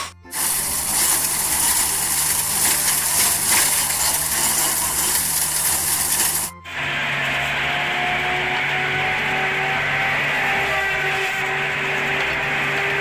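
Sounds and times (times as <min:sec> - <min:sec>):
toy mechanism rattling and hissing: 0:00.0 - 0:06.6.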